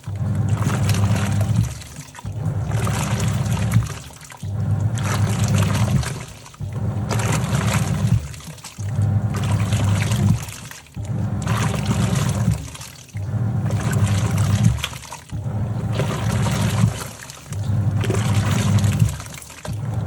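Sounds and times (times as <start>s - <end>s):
washing machine motor humming: 0.0s - 20.0s
water sloshing: 0.0s - 20.0s.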